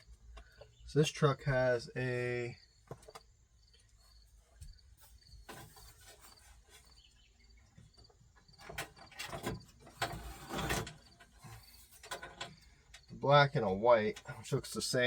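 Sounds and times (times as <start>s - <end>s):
crickets chirping: 2.4s - 5.5s
clicks and rattles of handling: 7.8s - 13.2s.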